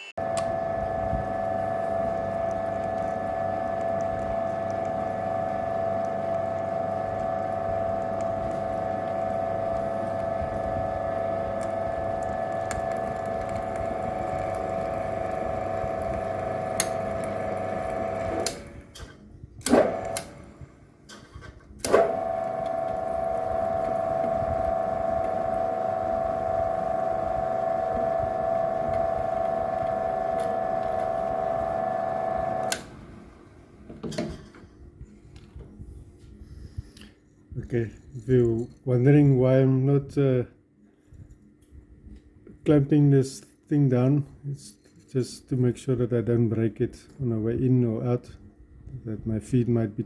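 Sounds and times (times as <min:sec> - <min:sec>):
drill press motor humming: 0:00.2 - 0:19.0, 0:19.6 - 0:20.9, 0:21.8 - 0:33.9.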